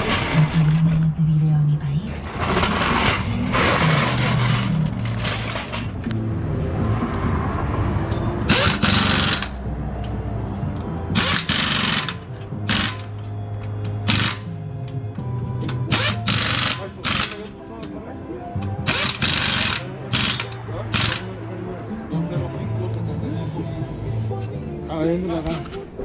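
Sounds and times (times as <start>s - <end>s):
background music: 0.0s - 26.0s
pneumatic impact wrench bursts: 8.5s - 9.6s, 11.1s - 13.1s, 14.0s - 14.5s, 15.9s - 17.5s, 18.8s - 21.4s.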